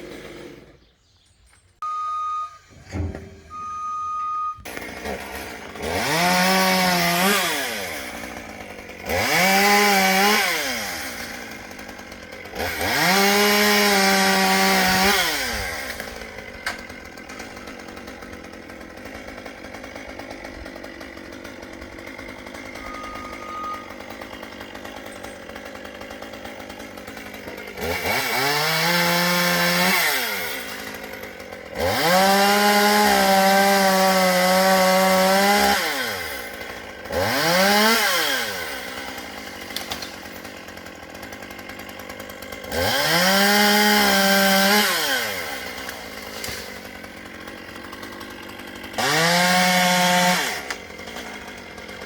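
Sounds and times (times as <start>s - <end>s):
chainsaw revving and idling: 0.0s - 0.9s, 4.6s - 52.0s.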